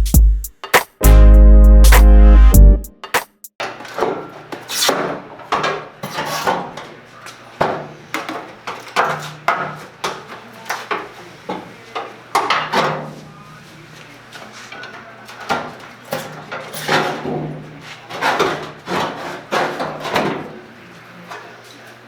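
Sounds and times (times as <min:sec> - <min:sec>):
metal panels scraping and knocking: 0:15.5 - 0:20.6.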